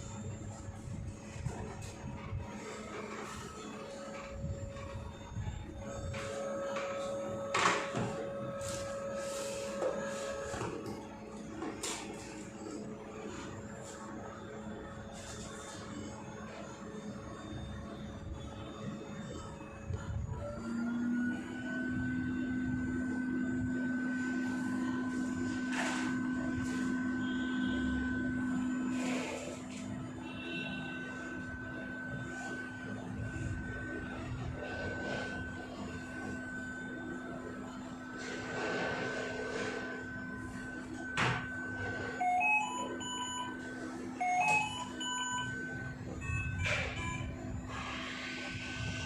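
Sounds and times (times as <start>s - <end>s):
ventilator machine hum: 0.0s - 49.0s
alarm beeps rising in pitch: 17.0s - 49.0s.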